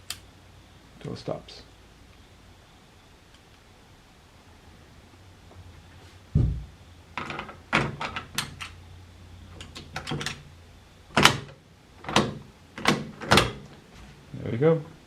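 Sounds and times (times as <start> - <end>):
dull thump: 6.3 - 6.8.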